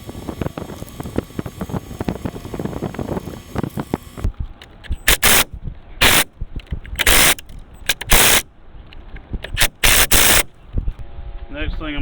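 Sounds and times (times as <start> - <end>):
compressed air tool bursts: 4.9 - 6.3, 6.9 - 8.5, 9.4 - 10.6.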